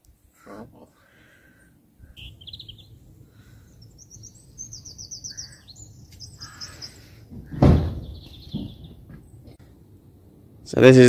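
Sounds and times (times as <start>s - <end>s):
low background rumble: 1.2s - 11.0s
songbird trilling: 2.0s - 9.4s
loud bump: 7.3s - 9.2s.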